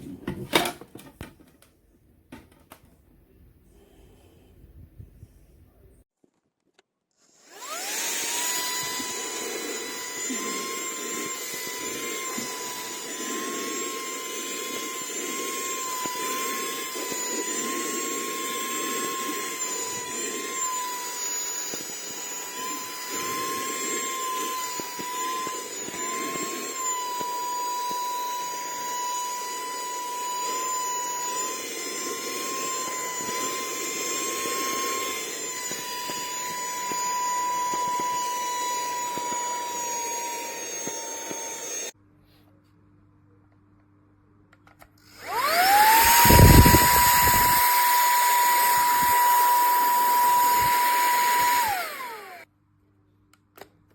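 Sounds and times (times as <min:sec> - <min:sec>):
handheld vacuum motor whine: 0:07.3 - 0:42.0, 0:45.1 - 0:52.5.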